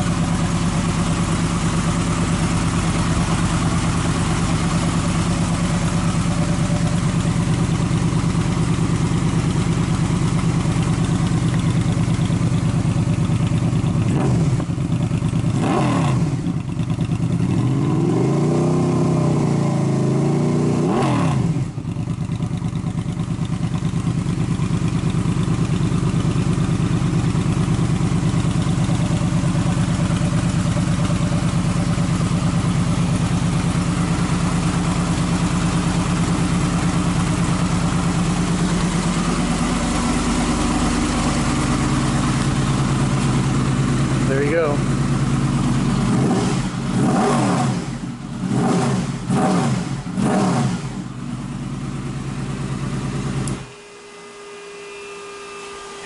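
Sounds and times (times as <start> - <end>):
motorcycle engine idling and revving: 0.0 - 56.0.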